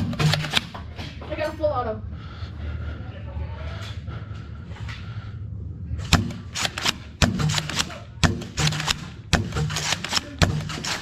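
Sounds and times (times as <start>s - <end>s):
foam dart blaster firing bursts: 0.0s - 0.8s, 6.1s - 11.0s.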